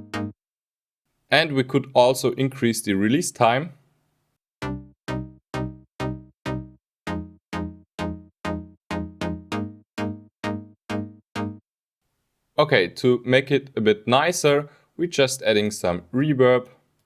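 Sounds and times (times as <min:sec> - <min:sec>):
synthesizer pluck notes: 0:00.0 - 0:00.4, 0:04.6 - 0:11.6.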